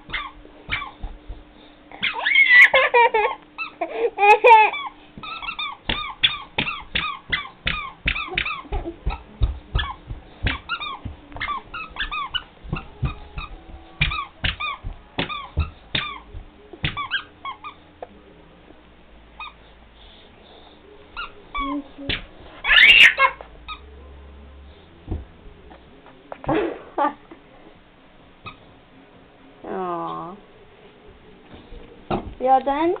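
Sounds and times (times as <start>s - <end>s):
squeaker shoe squeaking: 0.0s - 1.1s, 2.0s - 2.7s, 4.8s - 17.8s, 21.2s - 21.8s, 22.6s - 23.8s, 28.4s - 28.6s
soft footfalls: 0.0s - 1.9s, 5.2s - 17.3s, 25.0s - 26.7s, 31.0s - 33.0s.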